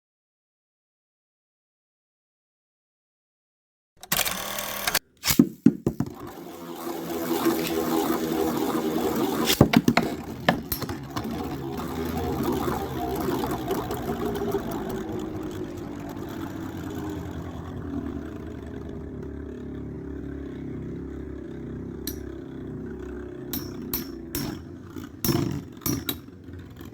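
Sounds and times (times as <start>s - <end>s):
spinning tops whirring and grinding: 4.0s - 26.9s
spinning tops clashing: 5.3s - 15.8s, 23.6s - 26.4s.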